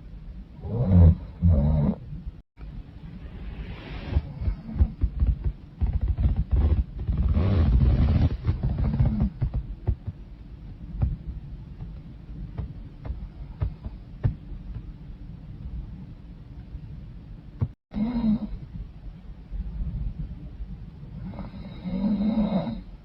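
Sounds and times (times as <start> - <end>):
woman snoring loudly: 0.6 - 2.0, 18.0 - 18.6, 21.3 - 22.9.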